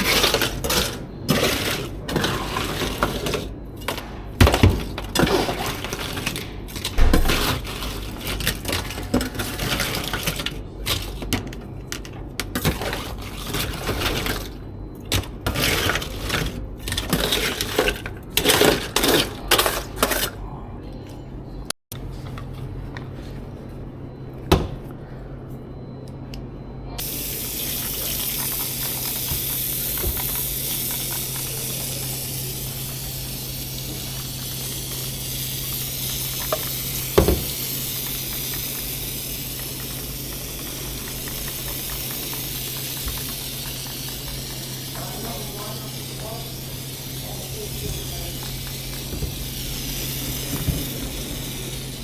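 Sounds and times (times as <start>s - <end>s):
spraying hiss: 27.0s - 52.0s.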